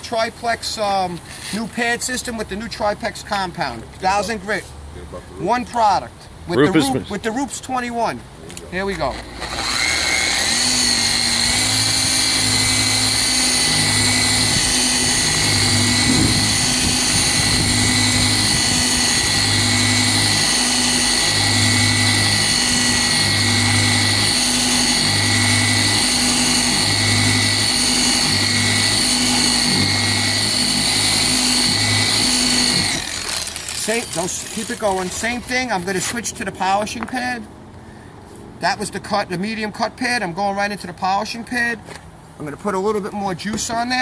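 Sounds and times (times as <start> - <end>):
polisher whine and hum: 9.2 - 34.6.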